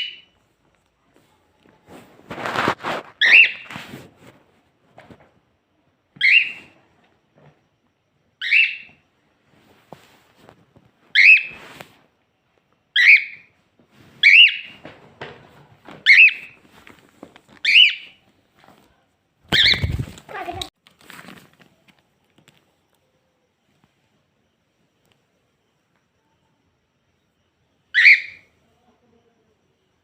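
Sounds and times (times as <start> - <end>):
cockatiel contact calls: 2.4 - 4.0, 6.2 - 6.8, 11.1 - 12.0, 13.0 - 13.5, 14.2 - 14.8, 16.0 - 16.6, 17.6 - 18.2, 19.5 - 20.6, 28.0 - 28.4.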